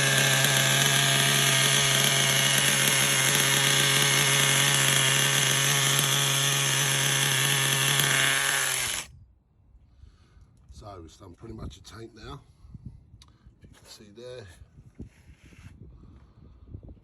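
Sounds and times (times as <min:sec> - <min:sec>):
small nitro engine running high: 0:00.0 - 0:09.1.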